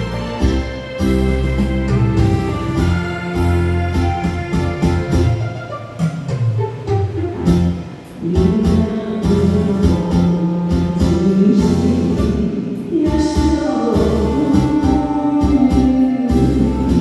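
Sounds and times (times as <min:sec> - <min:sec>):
plucked guitar: 0:00.0 - 0:17.0
person singing long held notes: 0:08.2 - 0:17.0.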